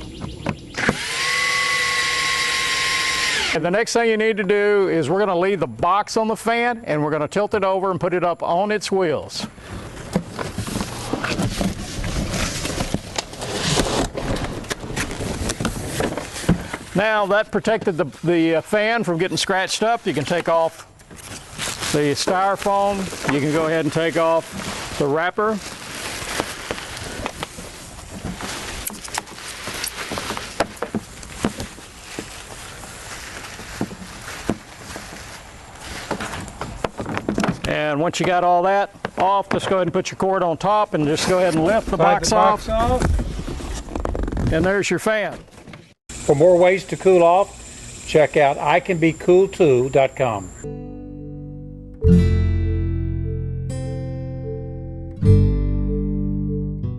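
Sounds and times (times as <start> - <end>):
cardboard scraping and rustling: 9.7 - 17.0, 21.2 - 37.6, 41.1 - 44.8
styrofoam creaking and knocking: 10.0 - 17.0, 21.1 - 38.4, 42.8 - 44.8
plastic wrapper crinkling: 21.2 - 36.1.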